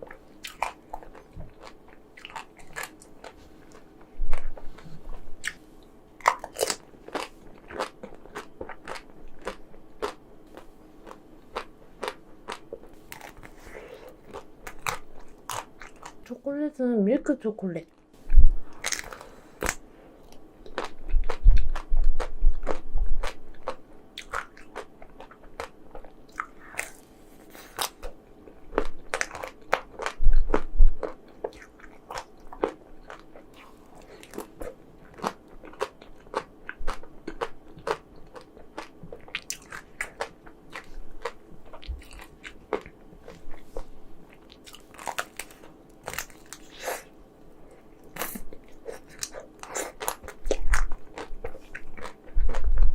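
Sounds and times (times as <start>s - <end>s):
biting and chewing ice cream: 0.0s - 5.6s, 6.2s - 16.3s, 18.8s - 52.9s.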